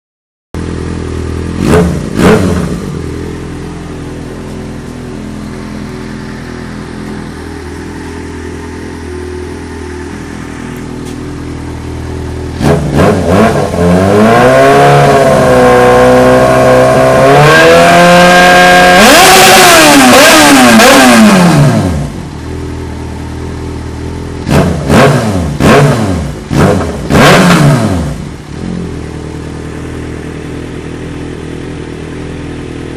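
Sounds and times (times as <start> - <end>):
motorcycle engine revving and idling: 0.6 - 32.9.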